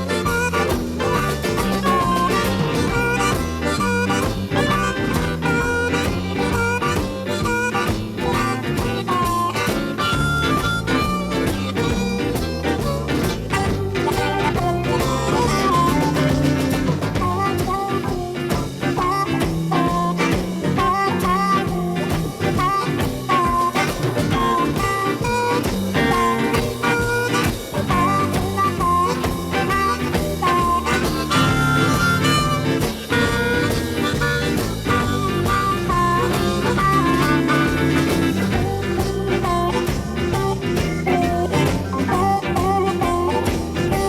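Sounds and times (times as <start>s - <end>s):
electric guitar bass and drums: 0.0s - 44.0s
instrumental blues band: 0.0s - 44.0s.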